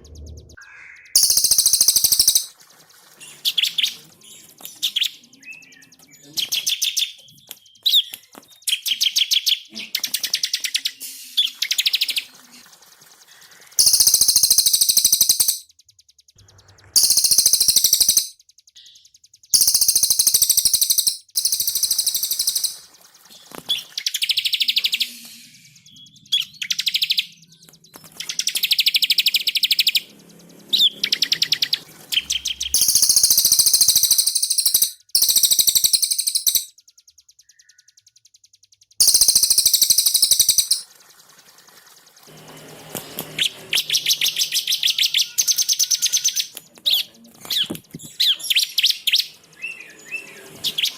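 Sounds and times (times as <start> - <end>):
songbirds trilling: 0.0 - 4.0, 13.8 - 15.6, 16.8 - 18.4, 19.6 - 22.9, 30.8 - 36.7, 39.0 - 40.9.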